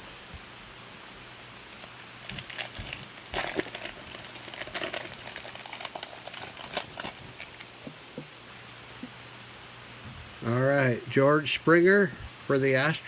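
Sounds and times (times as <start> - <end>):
wrapper crinkling: 1.3 - 8.4.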